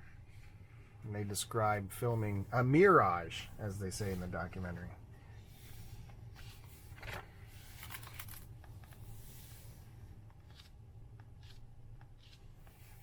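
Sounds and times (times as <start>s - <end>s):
book pages rustling: 10.3s - 13.0s.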